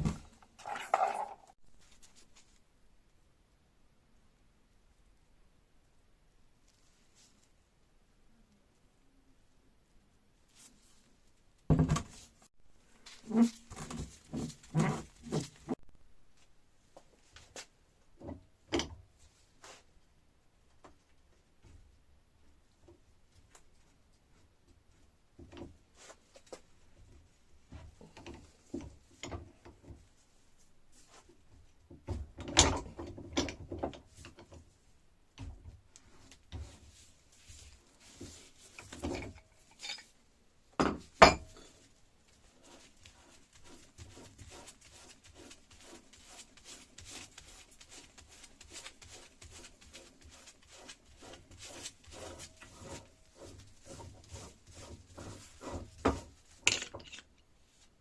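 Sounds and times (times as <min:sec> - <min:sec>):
metal parts clinking and knocking: 0:39.0 - 0:40.2.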